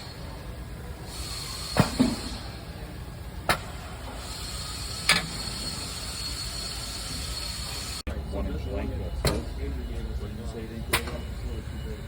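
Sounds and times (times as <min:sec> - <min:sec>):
faint high whine: 0:04.6 - 0:12.0.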